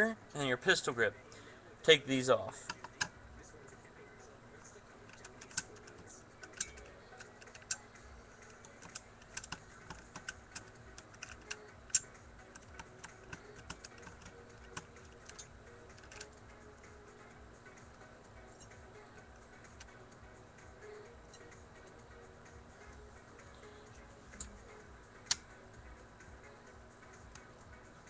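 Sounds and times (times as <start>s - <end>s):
screwdriver and parts clicking: 5.1s - 16.4s.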